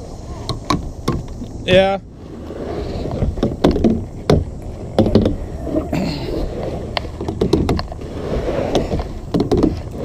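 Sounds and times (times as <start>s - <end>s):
kayak gear clicks and knocks: 0.4s - 1.9s, 3.1s - 5.9s, 6.9s - 8.0s, 8.7s - 10.0s.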